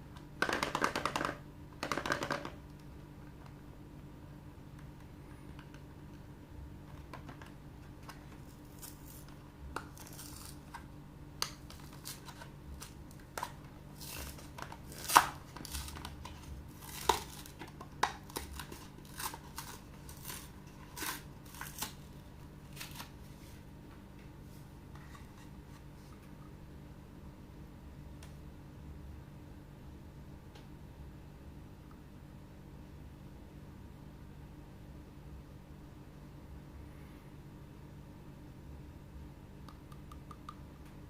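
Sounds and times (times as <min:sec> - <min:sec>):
packaging tearing and crinkling: 0:08.4 - 0:10.8, 0:11.5 - 0:23.2.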